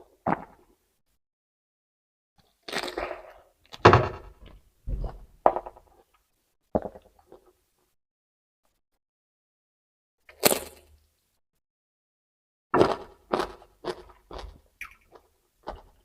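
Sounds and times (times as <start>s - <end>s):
crunchy vegetables being chewed: 2.4s - 3.4s, 12.8s - 16.0s.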